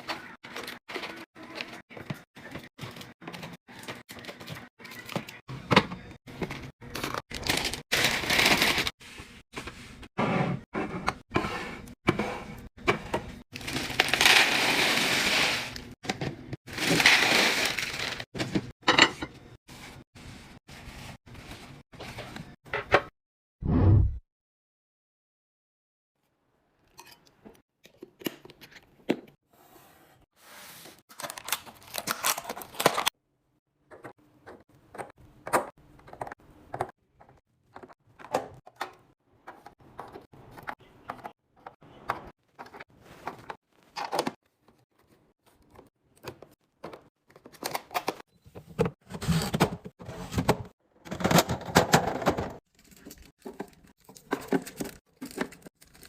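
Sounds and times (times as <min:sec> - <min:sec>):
packaging rustling: 0:52.7 - 0:56.0.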